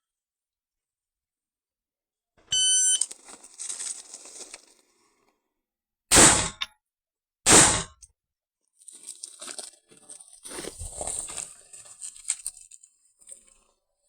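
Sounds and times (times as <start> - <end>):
shot timer start beep: 2.5 - 3.1
loud rifle shots: 6.1 - 6.6, 7.5 - 8.0.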